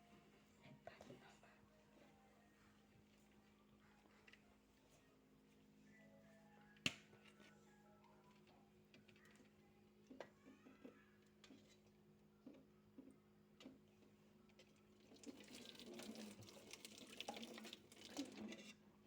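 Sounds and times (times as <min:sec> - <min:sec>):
water running into a sink: 0:15.0 - 0:18.7.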